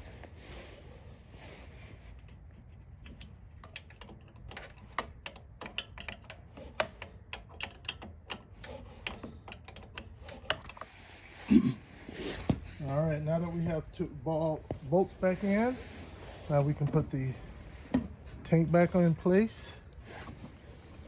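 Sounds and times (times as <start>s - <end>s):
hand tools clicking and tapping: 3.0s - 10.9s.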